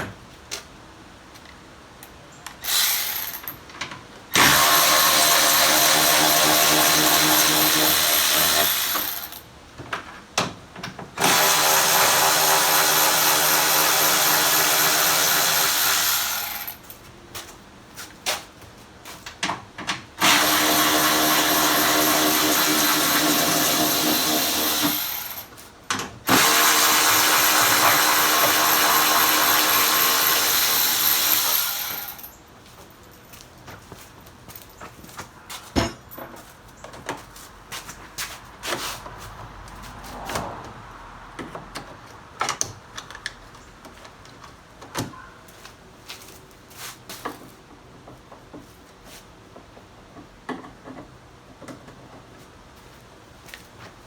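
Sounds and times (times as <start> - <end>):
power drill running: 4.4 - 9.4, 11.2 - 16.8, 20.2 - 25.5, 26.3 - 32.4
clicks and handling noise: 41.4 - 45.8.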